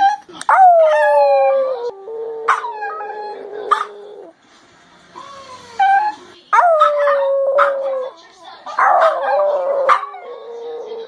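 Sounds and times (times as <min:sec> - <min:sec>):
puppies whining: 0:00.0 - 0:04.3, 0:05.1 - 0:08.1.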